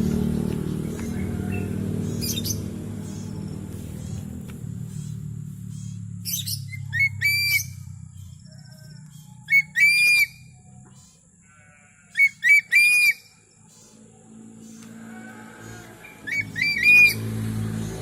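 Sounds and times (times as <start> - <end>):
eagle calling: 9.4 - 11.2.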